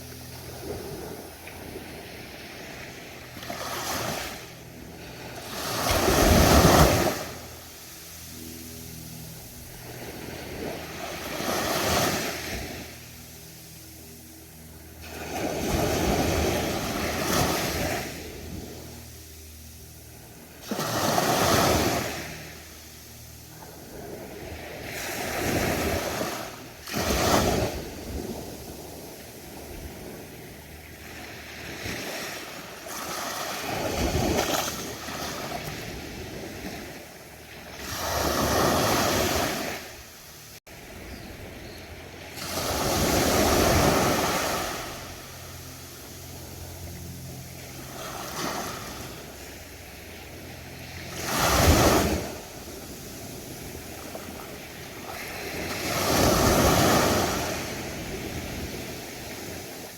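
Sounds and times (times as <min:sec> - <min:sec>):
ocean waves breaking on beach: 0:00.0 - 0:59.9
wind on microphone: 0:23.5 - 0:59.9.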